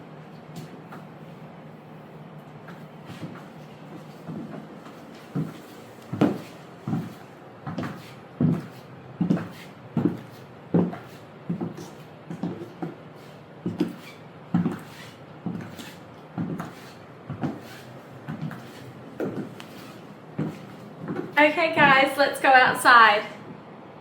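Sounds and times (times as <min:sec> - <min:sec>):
high heel footsteps on hard floor: 0:02.7 - 0:13.0, 0:13.6 - 0:22.0.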